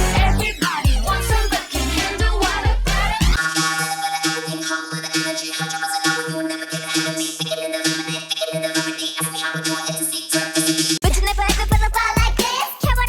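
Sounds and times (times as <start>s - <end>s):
synthesizer playing repeated notes: 0.0s - 3.4s.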